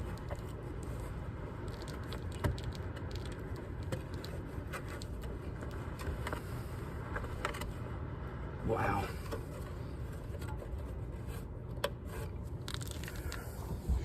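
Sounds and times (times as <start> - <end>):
steady low rush of noise: 0.0 - 14.0
hands scraping lint: 12.0 - 13.8.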